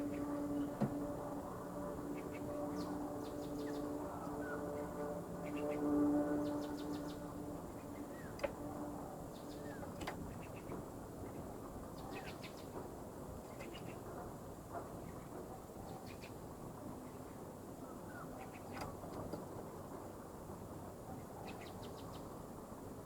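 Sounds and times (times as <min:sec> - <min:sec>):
steady low hum: 0:00.0 - 0:11.8.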